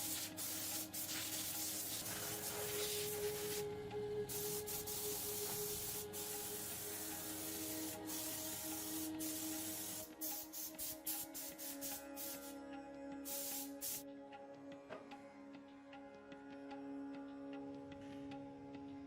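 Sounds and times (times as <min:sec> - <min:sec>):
steady hiss in stop-start bursts: 0:00.0 - 0:03.7, 0:04.3 - 0:12.6, 0:13.3 - 0:14.0
background music with held notes: 0:00.0 - 0:19.0.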